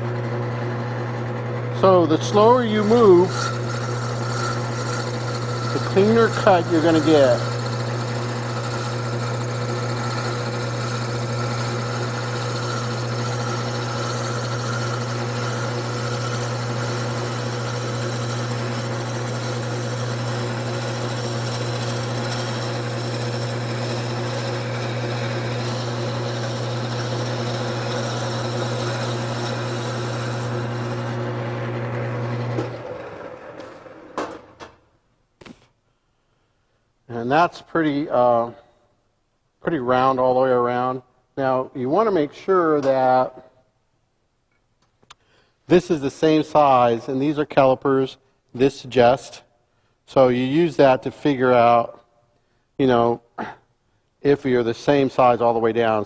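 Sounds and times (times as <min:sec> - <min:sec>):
wood lathe motor humming: 0:00.0 - 0:34.4
turning tool scraping wood: 0:01.8 - 0:34.3.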